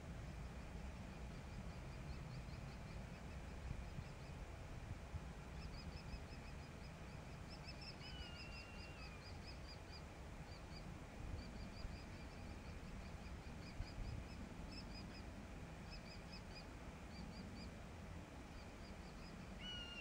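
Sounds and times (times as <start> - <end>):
bird calling high repeated notes: 19.6 - 20.0.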